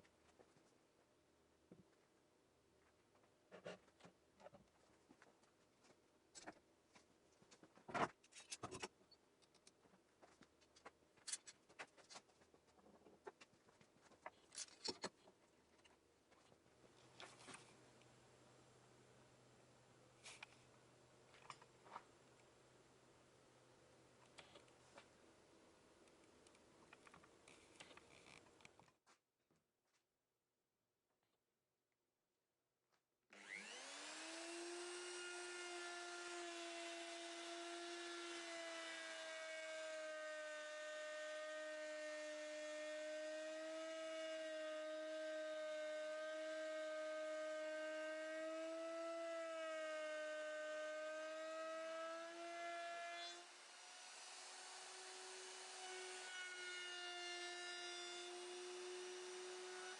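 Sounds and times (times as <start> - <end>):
power tool motor whine: 33.4 - 59.9.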